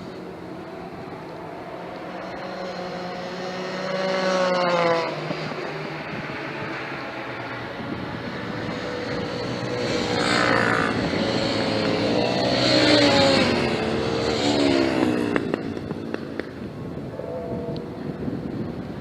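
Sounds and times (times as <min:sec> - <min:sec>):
motorbike passing at speed: 0:00.0 - 0:19.0.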